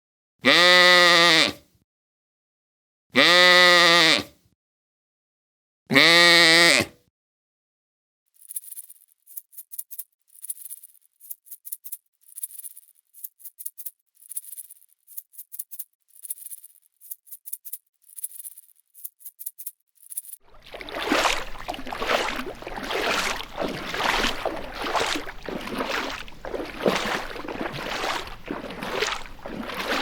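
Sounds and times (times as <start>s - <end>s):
dry rattling shakes: 8.4s - 20.4s.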